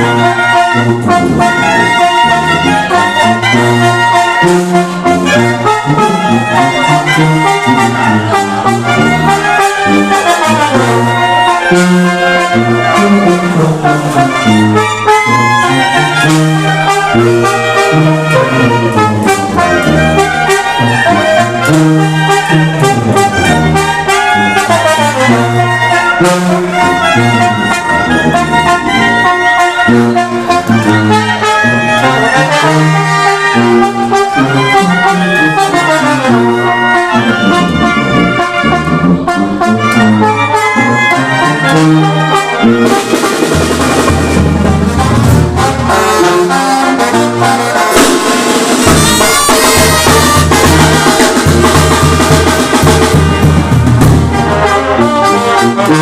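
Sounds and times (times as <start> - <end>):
percussion hits: 0.0 - 33.1, 36.5 - 55.3
trumpets and trombones: 0.0 - 56.0.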